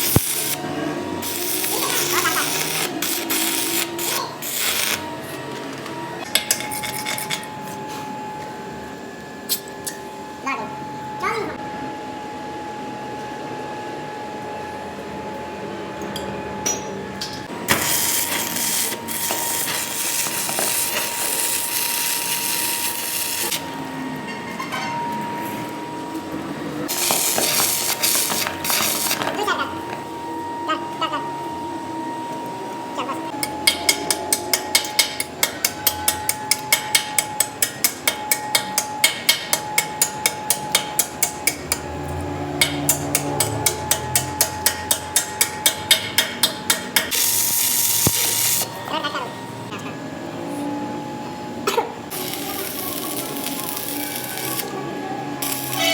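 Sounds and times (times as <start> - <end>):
metalworking machine whine: 0.0 - 55.9
hissing of metal being cut: 1.2 - 5.1
rhythmic metallic clicking: 42.6 - 47.3.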